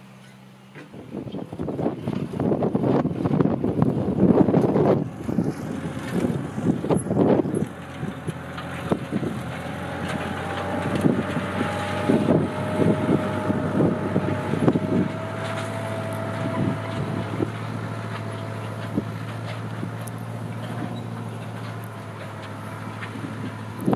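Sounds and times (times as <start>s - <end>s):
tractor diesel engine running: 0.0s - 23.9s
wind on microphone: 0.9s - 9.6s, 10.2s - 18.2s.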